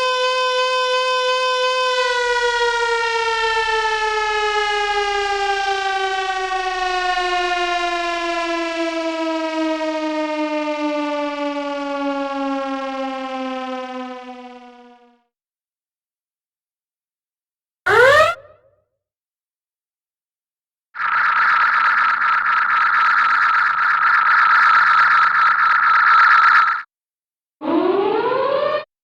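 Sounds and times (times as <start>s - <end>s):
warning siren wailing: 0.0s - 15.1s, 17.9s - 18.7s, 21.0s - 26.8s, 27.6s - 28.9s.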